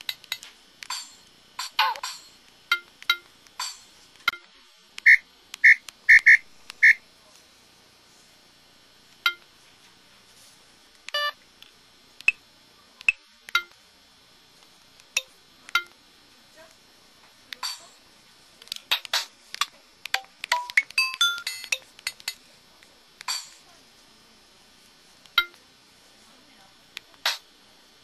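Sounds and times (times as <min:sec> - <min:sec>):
phone clicks and chirps: 0:04.3 - 0:07.0, 0:11.1 - 0:11.4, 0:18.9 - 0:22.3
phone key beeps: 0:05.0 - 0:07.0, 0:11.1 - 0:11.4, 0:20.5 - 0:21.8.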